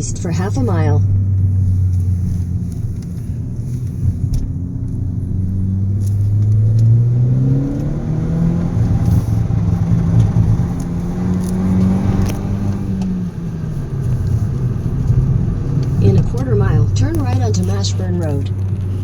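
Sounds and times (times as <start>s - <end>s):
car engine accelerating: 0.0s - 19.0s.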